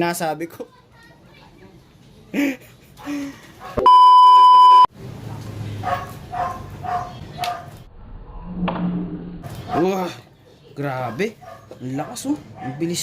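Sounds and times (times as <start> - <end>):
censor beep: 3.8 - 4.9.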